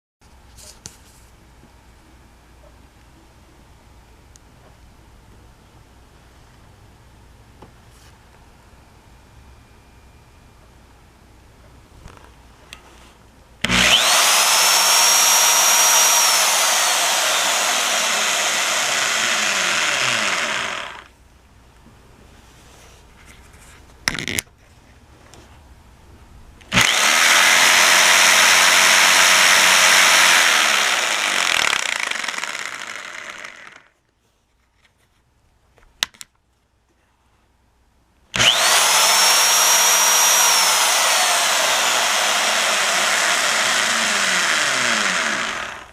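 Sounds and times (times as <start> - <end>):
electric drill motor whine: 13.6 - 21.1, 26.7 - 33.9, 38.4 - 45.9.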